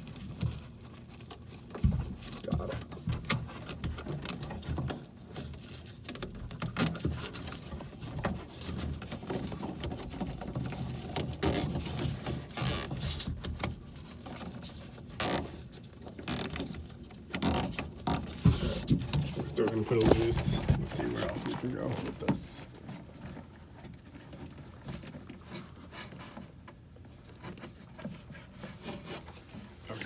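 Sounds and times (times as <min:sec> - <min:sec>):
zip tie ratcheting: 0:06.6 - 0:07.0, 0:11.2 - 0:11.8, 0:12.6 - 0:13.0, 0:15.2 - 0:15.5, 0:16.3 - 0:16.7, 0:17.4 - 0:18.4.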